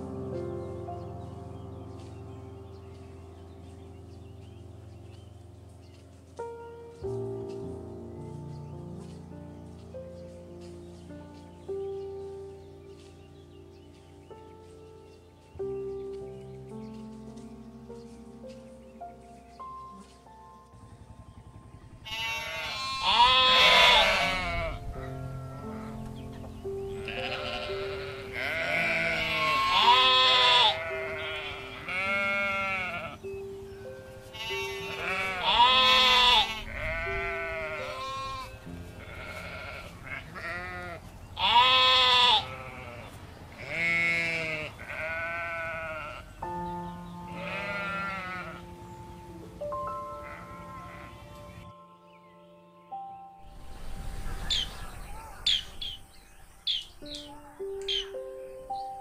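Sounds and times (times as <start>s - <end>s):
soft background music: 0.0s - 59.0s.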